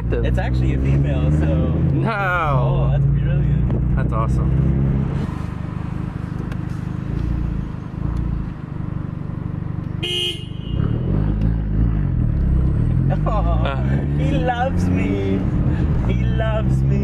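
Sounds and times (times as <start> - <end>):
car engine idling: 1.9 - 10.8
car horn toot: 9.9 - 11.2.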